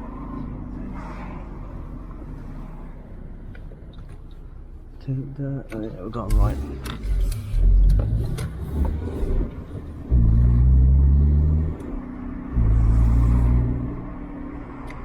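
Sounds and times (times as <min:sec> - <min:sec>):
low road rumble: 0:00.0 - 0:15.0
car engine accelerating: 0:06.2 - 0:15.0.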